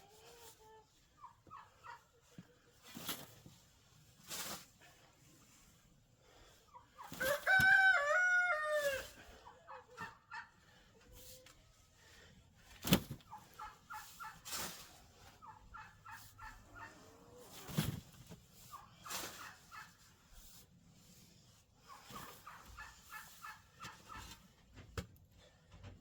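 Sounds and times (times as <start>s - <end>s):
hens clucking: 0.0s - 3.3s, 6.5s - 11.7s, 12.7s - 20.2s, 21.9s - 24.8s
rooster crowing: 7.2s - 9.2s.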